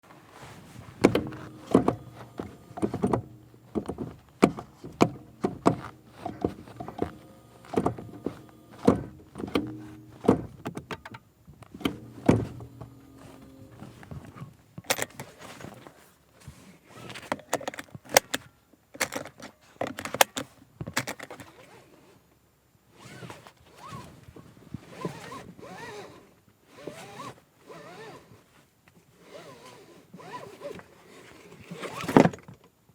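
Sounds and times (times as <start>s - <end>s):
light clicks and rubbing: 0.3s - 21.8s
gear selector and trim clunking: 0.7s - 15.8s.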